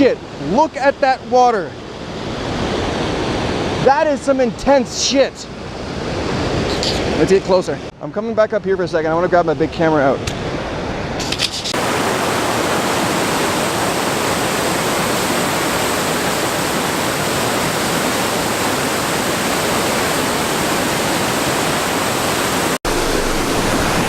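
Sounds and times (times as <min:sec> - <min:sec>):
waterfall rushing: 0:11.7 - 0:24.0.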